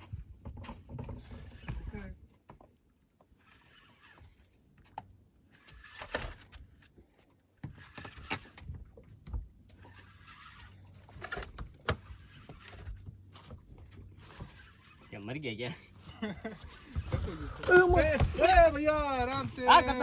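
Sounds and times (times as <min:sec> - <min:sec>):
boat engine humming: 0:07.8 - 0:20.0.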